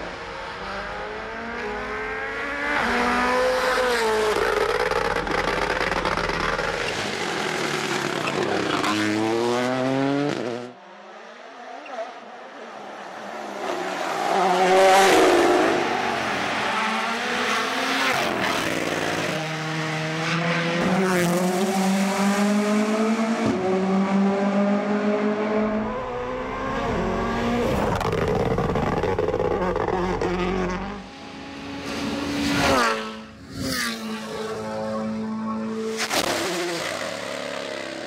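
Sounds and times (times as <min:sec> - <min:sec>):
rally car engines revving: 0:00.0 - 0:38.0
cars passing close by: 0:07.0 - 0:29.0, 0:30.0 - 0:38.0.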